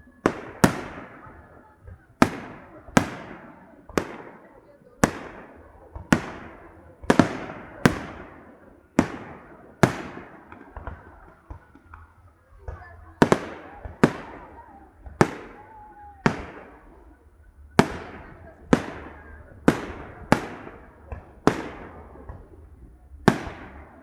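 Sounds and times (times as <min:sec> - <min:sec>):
firework crackles: 0:00.0 - 0:24.0
firework shells booming: 0:00.0 - 0:24.0
echoing rumble: 0:05.0 - 0:24.0.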